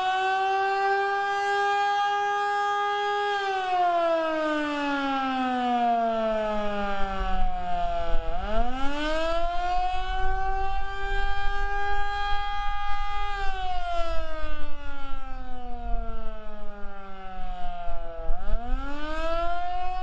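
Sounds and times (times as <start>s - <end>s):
outdoor warning siren: 0.0s - 20.0s
wind rumble on microphone: 6.5s - 20.0s.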